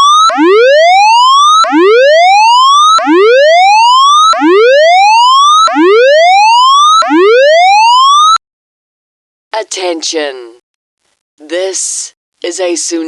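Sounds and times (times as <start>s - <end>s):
whooping warning siren: 0.0s - 8.4s.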